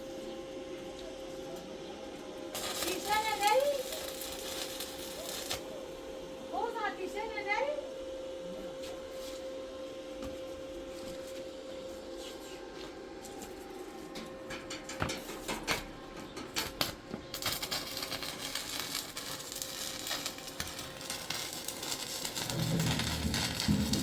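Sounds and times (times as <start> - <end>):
steady hum: 0.0 - 24.0
electric arc welding crackle: 2.5 - 7.7, 16.5 - 24.0.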